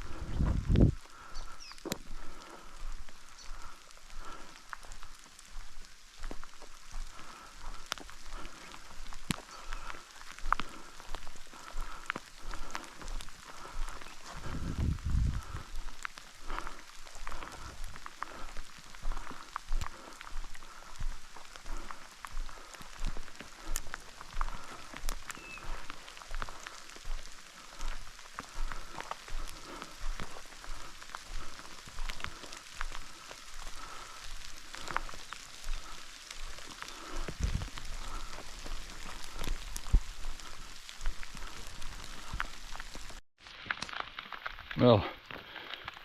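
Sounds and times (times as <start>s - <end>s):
footsteps through wet scrub: 0.0s - 46.0s
raindrop ticks: 0.0s - 46.0s
steady rain falling: 0.0s - 46.0s.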